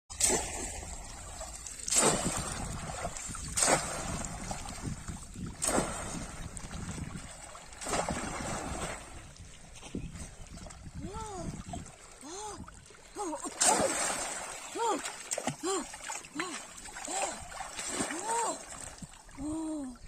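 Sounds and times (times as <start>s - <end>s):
trap splashing into water: 0.1s - 6.6s, 7.7s - 9.1s, 13.5s - 16.2s
water sloshing: 0.1s - 20.0s.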